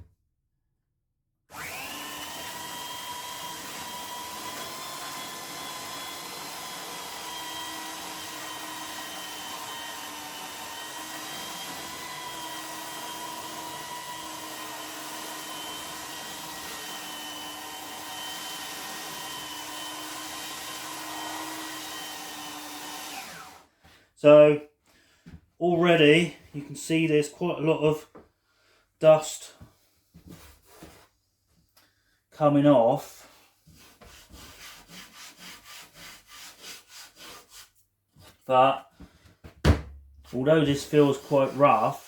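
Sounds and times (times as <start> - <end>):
belt sander sanding: 1.5 - 23.6, 33.7 - 37.7, 40.3 - 42.0.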